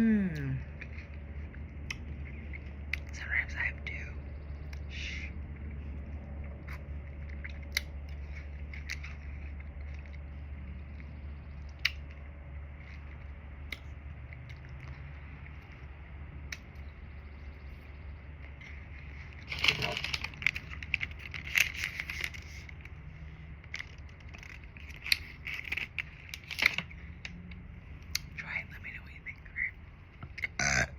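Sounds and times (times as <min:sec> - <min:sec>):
low steady hum: 0:00.0 - 0:30.9
crackling crunchy clicks: 0:00.8 - 0:30.9.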